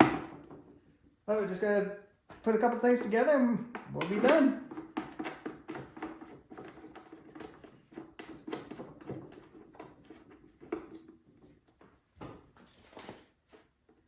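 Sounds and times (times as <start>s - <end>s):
clicks and knocks of parts handled: 3.7s - 13.5s.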